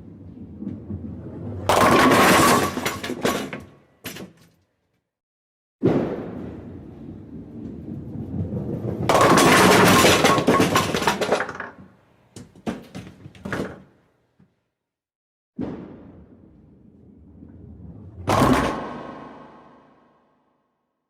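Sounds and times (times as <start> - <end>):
bowling ball rolling: 0.0 - 3.0, 6.6 - 13.9, 16.9 - 20.0
bowling pins crashing: 0.2 - 3.6, 7.6 - 13.9, 17.8 - 19.9.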